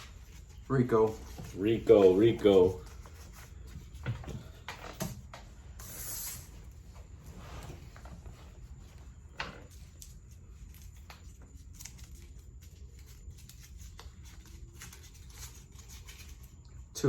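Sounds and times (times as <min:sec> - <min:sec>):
paper crinkling: 0:09.6 - 0:16.9.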